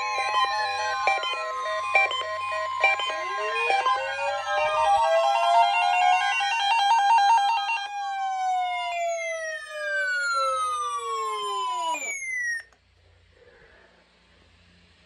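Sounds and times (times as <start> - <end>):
siren-like electronic tones: 0.0 - 12.8.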